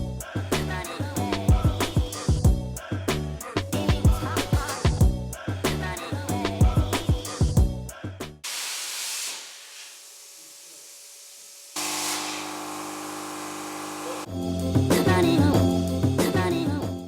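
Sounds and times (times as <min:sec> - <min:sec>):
background music: 0:00.0 - 0:08.4, 0:14.3 - 0:17.0
plasma cutter air hiss: 0:08.4 - 0:14.3
steady electrical hum: 0:10.6 - 0:14.3.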